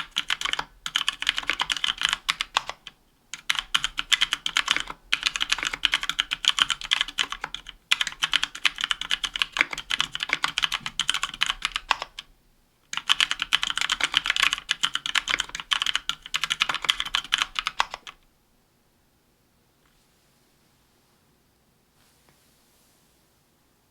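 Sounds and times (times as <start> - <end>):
mechanical keyboard typing: 0.0 - 12.3, 12.9 - 18.2.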